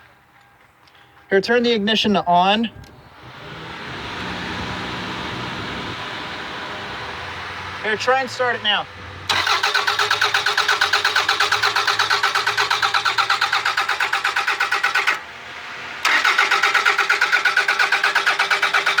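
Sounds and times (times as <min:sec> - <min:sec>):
car engine cranking on starter: 0:09.2 - 0:19.0.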